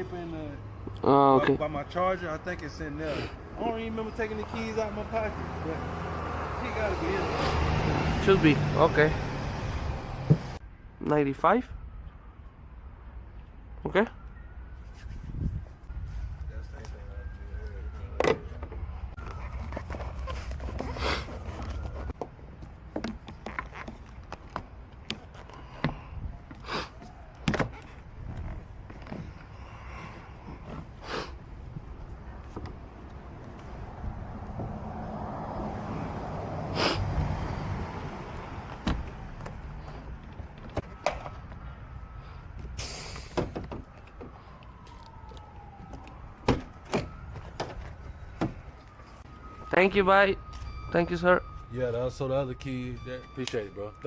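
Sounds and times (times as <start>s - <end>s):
short hiss: 42.8s - 43.4s.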